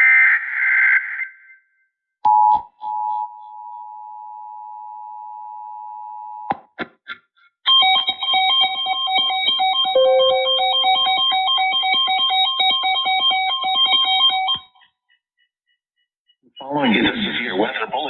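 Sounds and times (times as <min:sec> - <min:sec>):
two-tone attention signal: 0:09.9 - 0:11.4
data burst tones: 0:10.0 - 0:11.3
pulsing electronic melody: 0:10.0 - 0:11.3.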